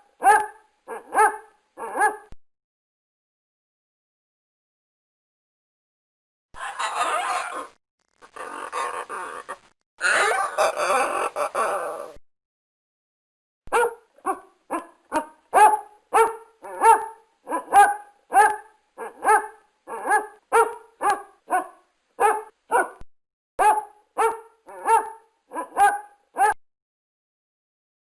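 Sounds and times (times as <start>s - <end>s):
dog barking: 0.0s - 2.4s, 6.6s - 7.7s, 10.0s - 11.0s, 13.7s - 23.0s, 23.6s - 26.6s.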